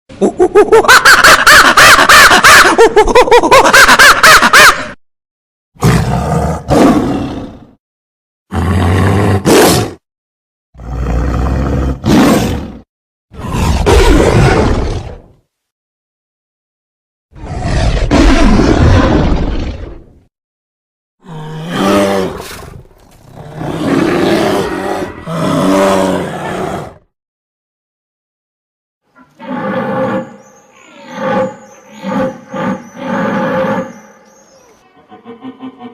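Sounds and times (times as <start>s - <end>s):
large animal calling loudly: 0.8s - 2.7s, 3.7s - 4.8s, 29.2s - 34.2s
lion roaring: 10.8s - 12.8s, 13.4s - 15.3s, 17.4s - 20.0s, 21.2s - 27.0s, 31.0s - 34.1s.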